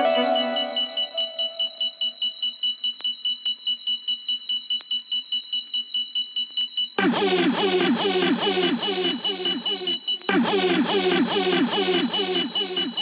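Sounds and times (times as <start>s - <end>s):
sustained synth chord: 0.0s - 1.6s
high bell-like synth pattern: 0.0s - 2.0s.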